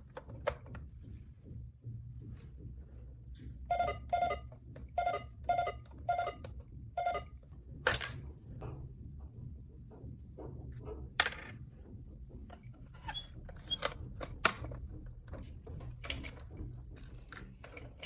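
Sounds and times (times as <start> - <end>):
toy cash register beeps: 3.7 - 7.3.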